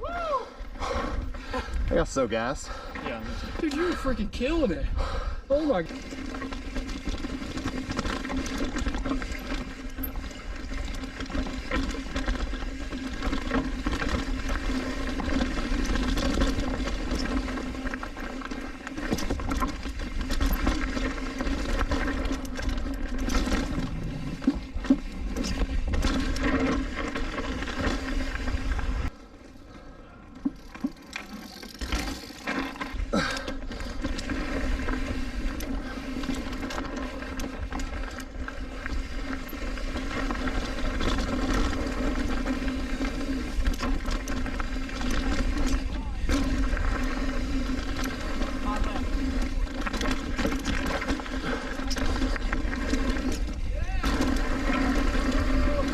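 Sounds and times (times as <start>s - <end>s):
bike rattling over rocks: 1.1s - 4.8s, 5.5s - 29.2s, 30.3s - 55.9s
wind rumbling on microphone: 19.1s - 29.1s.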